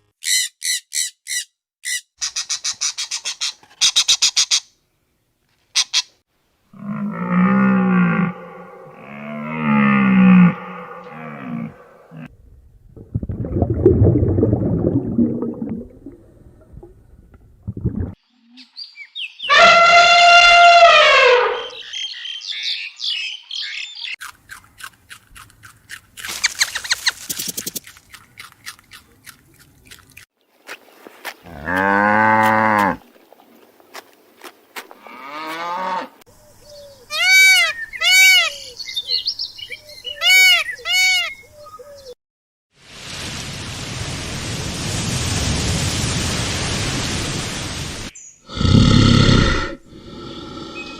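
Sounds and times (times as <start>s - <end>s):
cow mooing: 6.8s - 12.3s, 31.5s - 33.0s, 35.0s - 36.2s.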